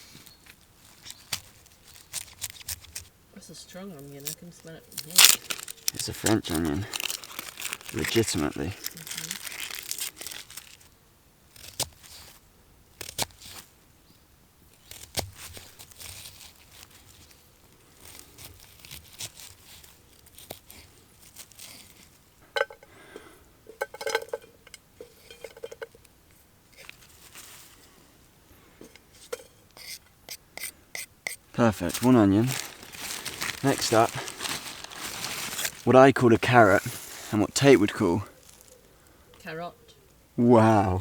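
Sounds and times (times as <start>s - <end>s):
knife cutting onion: 29.8s - 31.4s.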